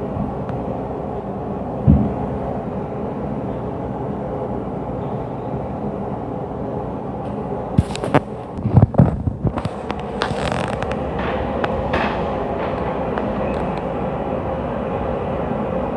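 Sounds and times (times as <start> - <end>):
steady low rumble: 0.0 - 15.9
heavy thud through ceiling: 1.8 - 2.3.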